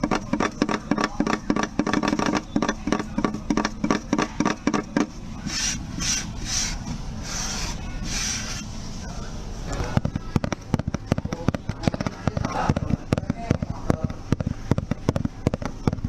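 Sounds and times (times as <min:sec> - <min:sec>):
soft rubbing strokes: 0:05.1 - 0:09.7.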